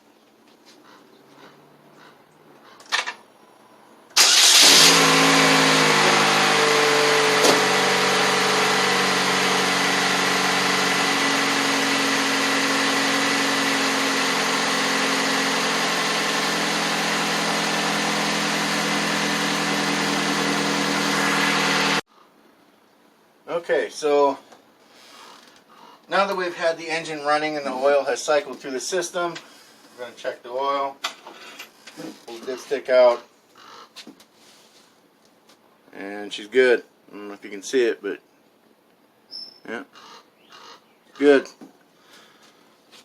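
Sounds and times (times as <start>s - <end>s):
car engine starting and idling: 4.1s - 22.0s.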